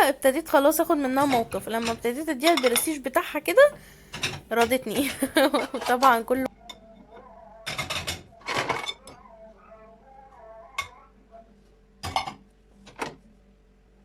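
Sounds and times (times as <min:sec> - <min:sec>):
dishes and glassware clinking: 0:01.1 - 0:03.0, 0:04.1 - 0:07.1, 0:07.7 - 0:09.2, 0:10.8 - 0:11.0, 0:12.0 - 0:12.4.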